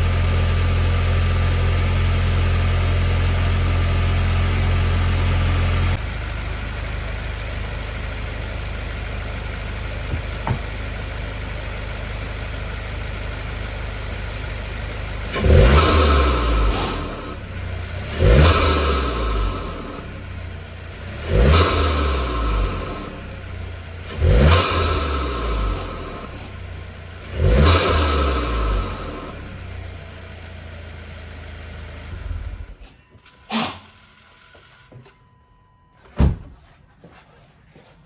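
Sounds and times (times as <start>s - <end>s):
car engine idling: 0.0s - 33.0s
engine revving in blips: 14.8s - 32.8s.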